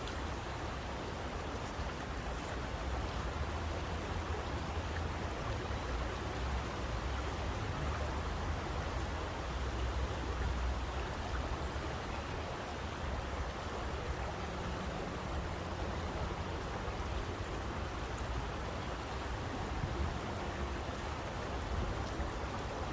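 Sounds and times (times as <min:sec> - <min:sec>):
rushing water: 0:00.0 - 0:22.9.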